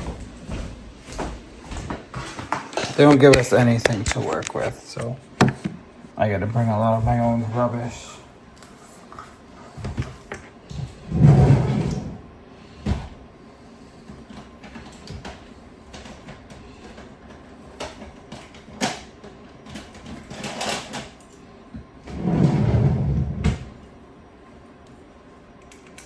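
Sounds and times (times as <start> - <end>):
objects knocking and bumping: 2.1 - 5.8.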